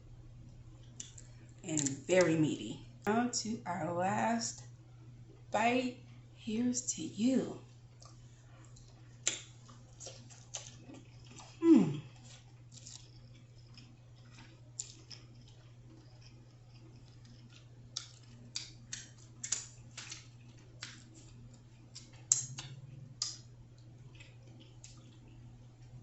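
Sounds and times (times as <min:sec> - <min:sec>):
steady low hum: 0:00.0 - 0:26.0
wet clicks and lip smacks: 0:00.8 - 0:01.3, 0:07.9 - 0:11.5, 0:12.3 - 0:23.5
chewing seafood: 0:07.6 - 0:26.0
person humming mm: 0:11.6 - 0:12.1.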